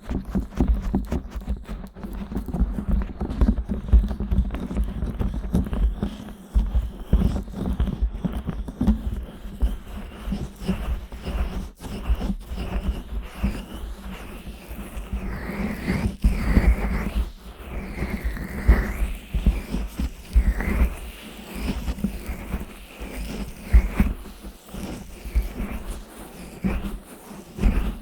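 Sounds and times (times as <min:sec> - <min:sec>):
fingers rubbing microphone: 0:17.8 - 0:28.0.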